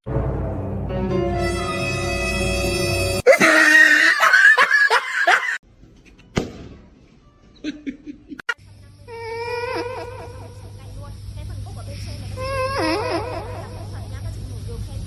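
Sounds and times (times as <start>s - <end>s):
held musical tone: 0.1s - 3.3s
loud laughter: 3.3s - 5.6s.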